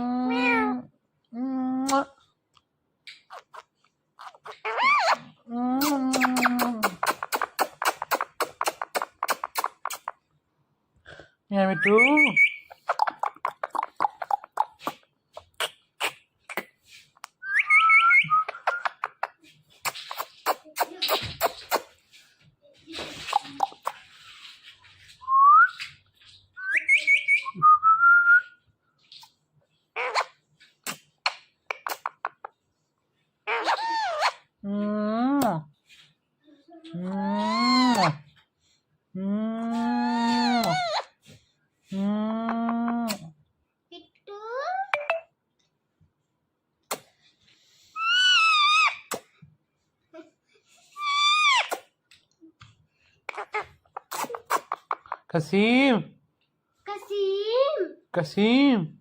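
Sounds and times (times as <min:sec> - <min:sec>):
parrot screeching: 0:04.3 - 0:05.2, 0:33.5 - 0:34.4, 0:37.2 - 0:38.2, 0:48.0 - 0:49.1, 0:51.0 - 0:51.8
parrot whistling: 0:17.4 - 0:18.9, 0:26.6 - 0:28.6
brief scratchy noises: 0:19.8 - 0:22.2.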